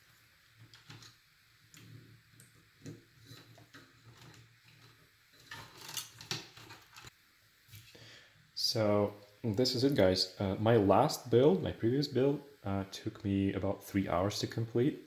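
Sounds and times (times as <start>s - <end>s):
cables and plastic rustling: 0.6s - 7.1s.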